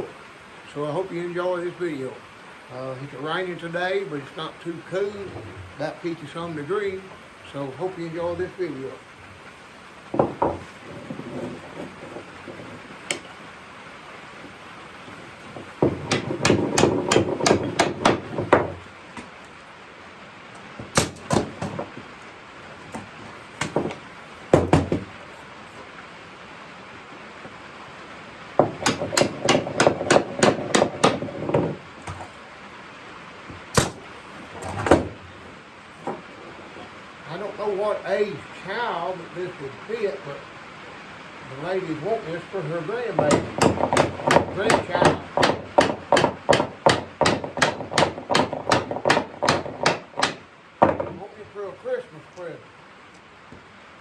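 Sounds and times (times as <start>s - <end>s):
hammering on wood: 10.1s - 13.3s, 15.4s - 19.3s, 20.8s - 21.9s, 22.9s - 25.1s, 28.6s - 32.3s, 33.7s - 34.0s, 43.1s - 51.2s
hammer blows: 15.4s - 19.3s.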